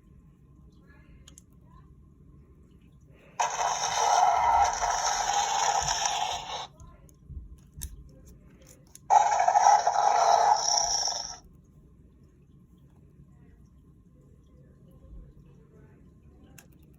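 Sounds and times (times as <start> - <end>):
toy dinosaur call through speaker: 9.1 - 11.4.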